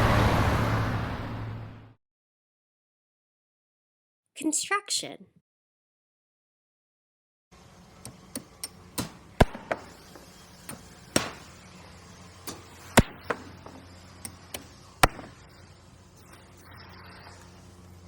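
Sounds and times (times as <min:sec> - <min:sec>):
sharp hammer blows: 0:10.7 - 0:11.6, 0:12.5 - 0:13.4, 0:14.6 - 0:15.4.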